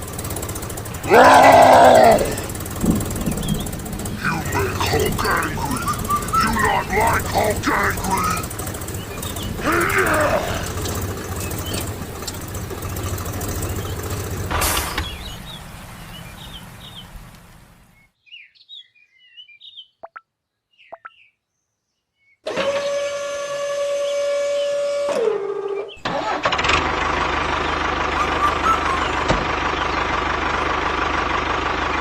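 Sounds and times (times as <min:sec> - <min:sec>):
high motor whine: 0:00.0 - 0:14.6
engine running: 0:00.0 - 0:18.0, 0:22.5 - 0:32.0
bird-like chirps: 0:03.2 - 0:09.6, 0:14.8 - 0:17.2, 0:17.9 - 0:22.4, 0:27.6 - 0:30.1.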